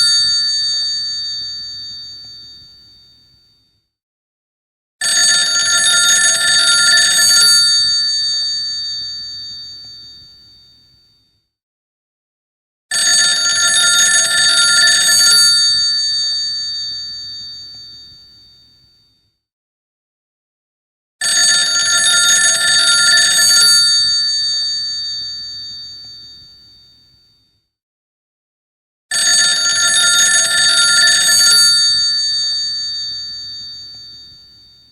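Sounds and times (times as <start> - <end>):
telephone bell ringing: 0.0 - 3.4, 5.0 - 11.0, 12.9 - 18.9, 21.2 - 27.2, 29.1 - 34.9.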